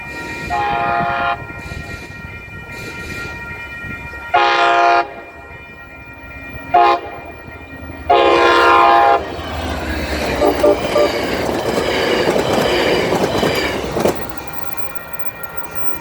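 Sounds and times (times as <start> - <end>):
locomotive air horn blasts: 0.5 - 1.5, 4.3 - 5.3, 6.7 - 7.3, 8.1 - 9.4, 10.3 - 11.2.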